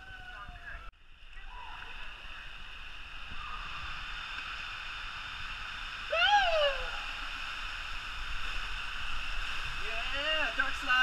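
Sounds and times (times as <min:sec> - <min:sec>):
water rushing through slide: 0:01.4 - 0:11.0
person shouting whoo: 0:06.1 - 0:07.2.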